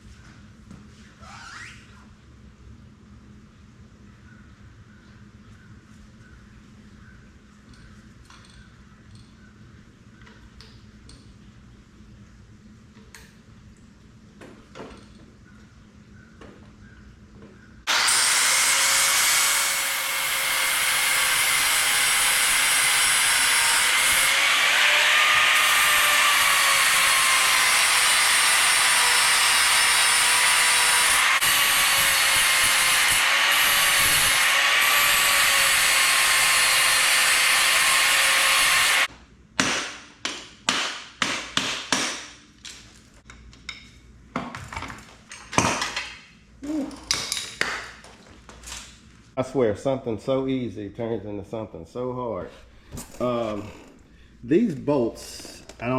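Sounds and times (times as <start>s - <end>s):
power cutting tool whining: 17.9s - 39.1s.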